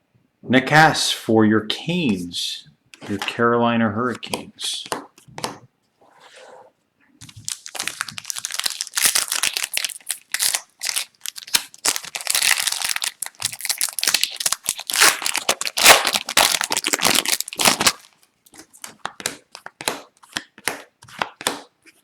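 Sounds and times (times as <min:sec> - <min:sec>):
foil wrapper tearing and crinkling: 0:07.2 - 0:18.9.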